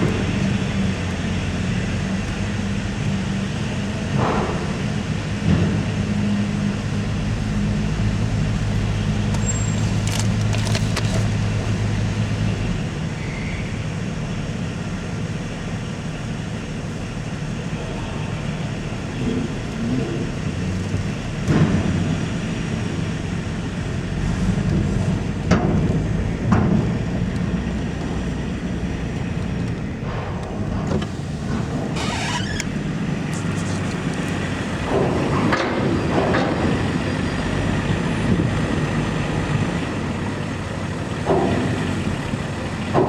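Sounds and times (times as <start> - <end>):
car engine and road noise: 0.0 - 43.0.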